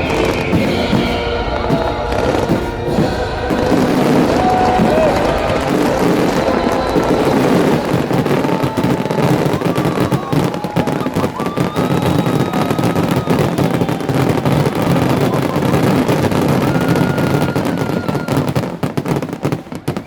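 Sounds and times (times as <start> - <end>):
fireworks bangs and crackles: 0.0 - 20.0.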